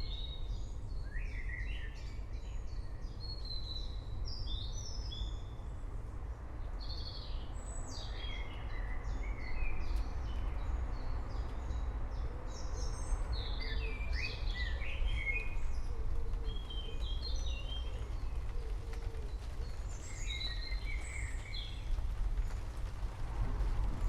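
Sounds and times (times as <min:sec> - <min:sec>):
continuous low rumble: 0:00.0 - 0:24.0
forest birds chirping: 0:00.0 - 0:24.0
rain hissing: 0:15.5 - 0:24.0.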